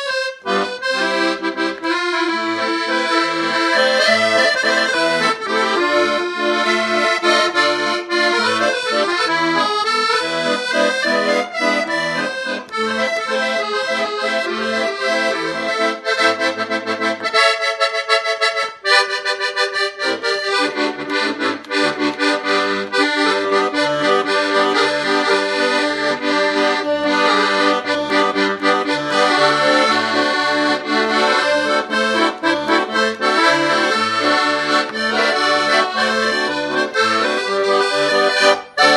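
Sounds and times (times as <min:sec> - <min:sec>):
accordion playing lively tune: 0:00.0 - 0:38.9.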